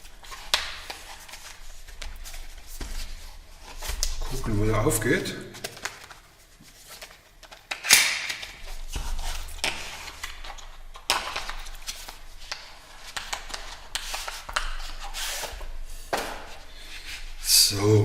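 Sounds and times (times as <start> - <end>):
packaging rustling: 5.6 - 17.4.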